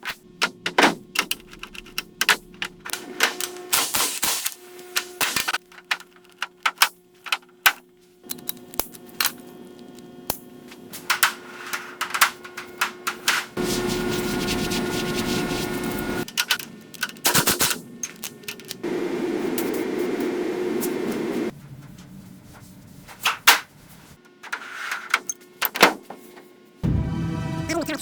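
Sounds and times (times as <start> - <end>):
sharp clicks and knocks: 0.0 - 3.8, 5.0 - 10.4.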